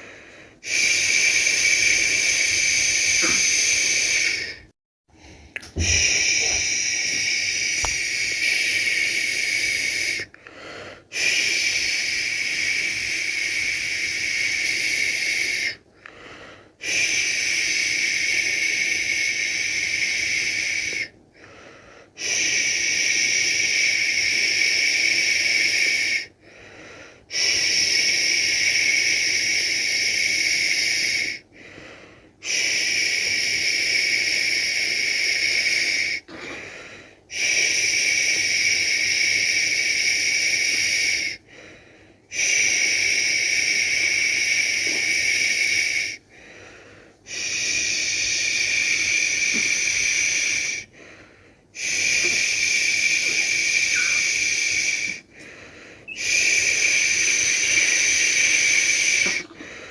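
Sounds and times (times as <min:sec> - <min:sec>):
person shushing: 0:05.6 - 0:08.2, 0:51.8 - 0:55.2, 0:56.1 - 0:59.6.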